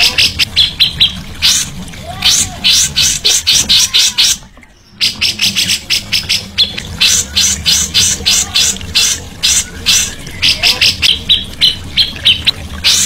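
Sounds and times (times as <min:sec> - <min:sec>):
songbird rasping chatter: 0:05.0 - 0:13.0.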